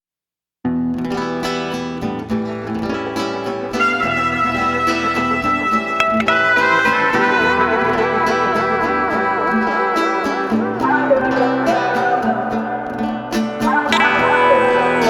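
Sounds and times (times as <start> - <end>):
upbeat instrumental music: 3.6 - 12.8, 13.8 - 15.0.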